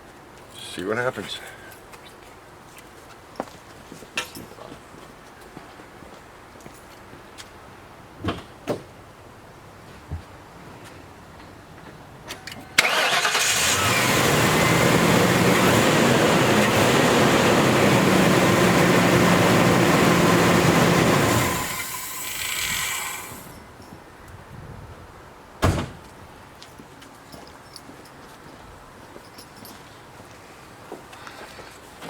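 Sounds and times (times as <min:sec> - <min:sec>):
car engine starting and running: 0:12.8 - 0:23.6
sharp knock: 0:25.6 - 0:26.0.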